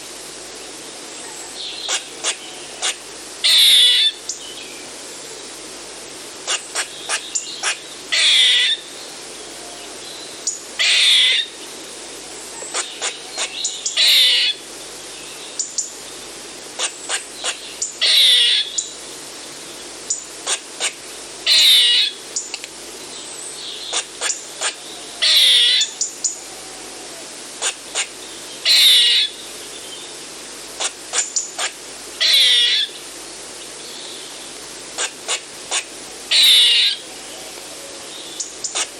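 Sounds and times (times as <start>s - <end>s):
squirrel raspy alarm call: 1.7s - 4.2s, 6.5s - 8.9s, 10.8s - 11.6s, 12.7s - 14.6s, 16.8s - 18.8s, 20.4s - 22.2s, 23.8s - 26.4s, 27.6s - 29.4s, 30.8s - 33.0s, 35.0s - 37.1s, 38.4s - 38.9s.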